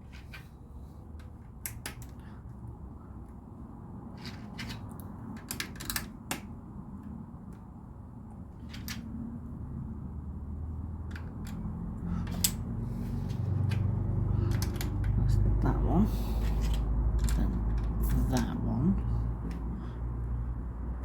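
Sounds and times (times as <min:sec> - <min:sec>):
plastic toy bricks clicking: 0:01.2 - 0:02.2, 0:04.2 - 0:06.5, 0:08.6 - 0:09.0, 0:11.0 - 0:12.6, 0:13.6 - 0:15.4, 0:16.4 - 0:18.6.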